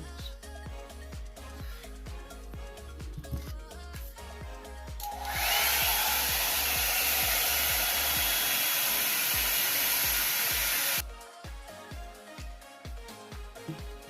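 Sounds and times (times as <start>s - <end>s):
background music with beat: 0.0s - 14.0s
hot air brush motor whine: 5.0s - 11.0s.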